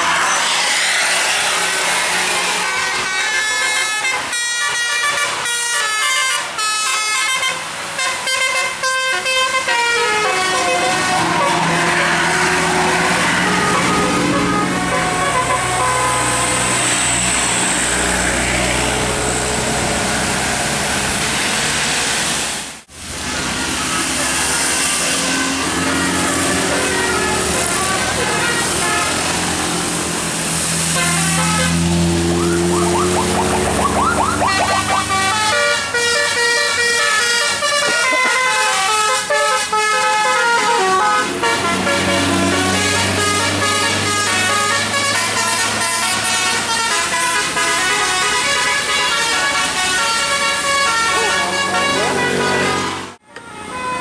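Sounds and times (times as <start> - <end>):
rain and road spray hissing: 0.0 - 4.0, 16.1 - 40.7
bus engine running: 0.0 - 4.3, 9.7 - 53.2
musical air horn tune: 0.0 - 17.2, 25.2 - 29.8, 30.6 - 53.1.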